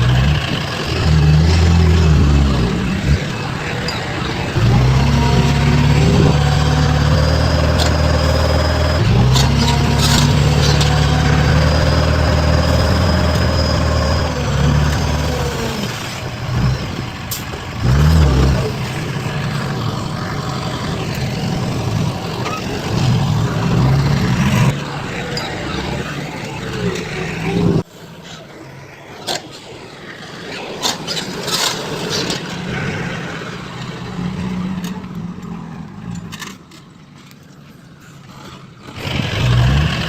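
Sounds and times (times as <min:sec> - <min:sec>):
heavy diesel engine running: 0:00.0 - 0:27.8, 0:38.3 - 0:40.0.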